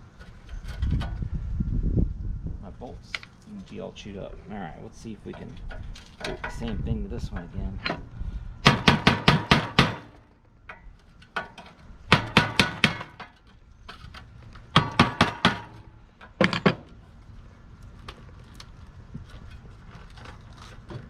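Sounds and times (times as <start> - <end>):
hammer striking metal bolt: 8.6 - 10.8, 11.4 - 13.4, 14.8 - 16.9.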